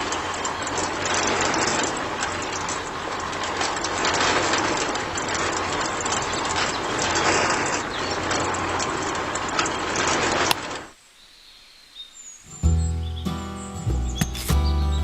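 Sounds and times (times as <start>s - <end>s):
train rattling: 0.0s - 10.9s.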